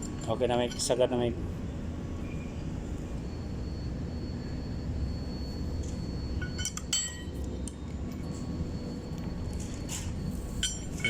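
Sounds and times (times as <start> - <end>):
low workshop rumble: 0.0 - 11.0
metal tools clinking on engine parts: 6.4 - 7.3.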